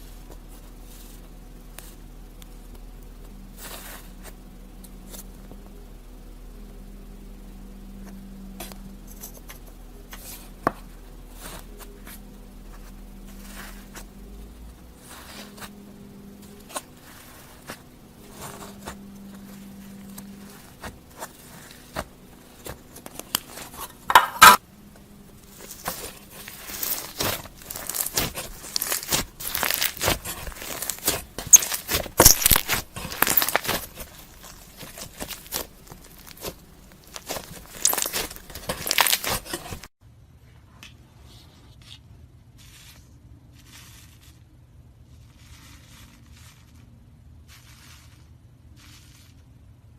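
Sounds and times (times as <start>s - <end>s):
faint low hum: 0.0s - 49.9s
slime clicking and popping: 37.1s - 39.5s.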